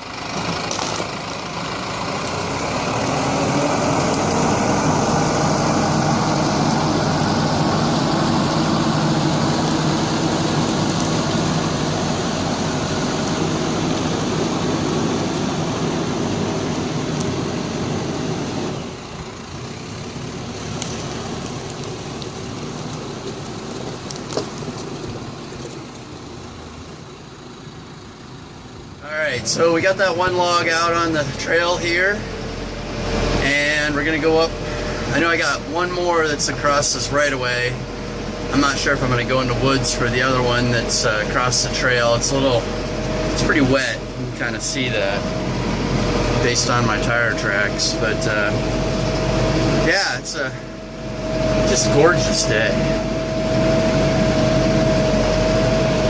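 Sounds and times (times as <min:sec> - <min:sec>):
tractor diesel engine running: 0:00.0 - 0:56.0
log dragging: 0:20.6 - 0:26.1.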